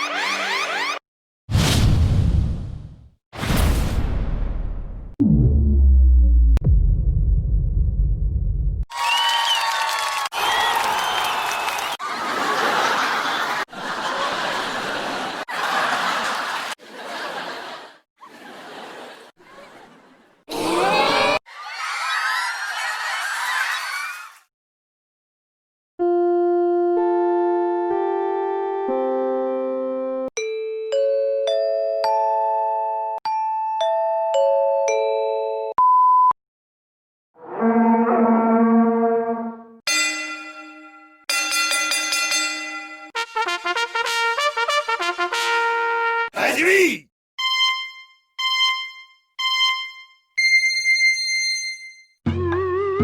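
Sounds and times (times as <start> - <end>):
group laughter and snickering: 12.0 - 24.2
short censor beep: 35.8 - 36.4.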